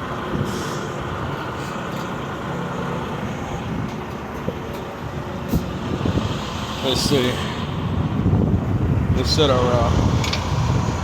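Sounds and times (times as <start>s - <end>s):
truck diesel engine idling: 0.0s - 11.0s
air brake building pressure: 0.4s - 1.0s, 5.4s - 8.5s.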